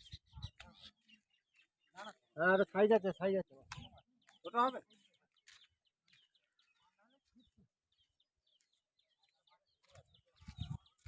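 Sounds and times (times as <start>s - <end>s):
birds chirping: 0.0s - 11.0s.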